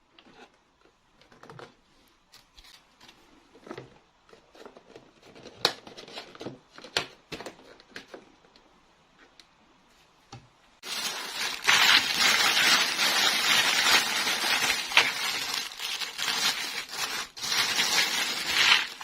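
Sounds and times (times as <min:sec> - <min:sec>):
packaging crinkling: 0:10.8 - 0:19.0.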